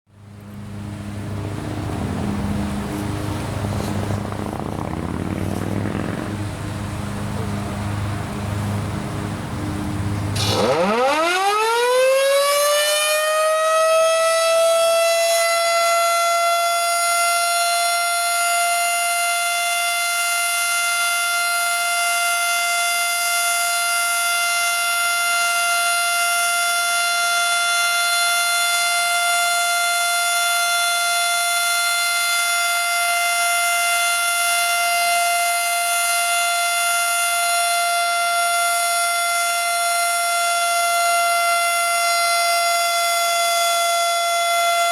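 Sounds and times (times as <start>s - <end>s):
tornado siren wailing: 0.7s - 8.1s, 9.7s - 44.9s.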